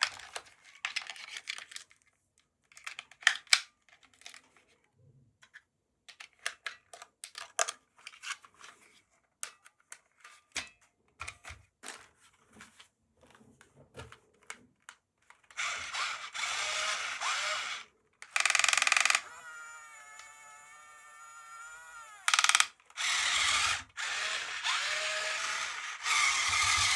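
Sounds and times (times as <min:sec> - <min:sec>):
plastic toy parts clicking: 0:02.7 - 0:04.4, 0:06.1 - 0:07.8, 0:15.3 - 0:19.3, 0:22.1 - 0:26.9
toy mechanism whirring: 0:15.6 - 0:26.9.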